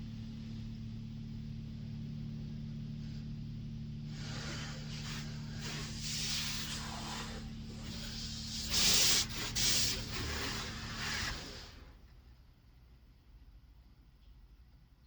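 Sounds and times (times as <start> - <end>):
steady low hum: 0.0 - 15.0
hissing rubbing strokes on car: 4.1 - 12.0.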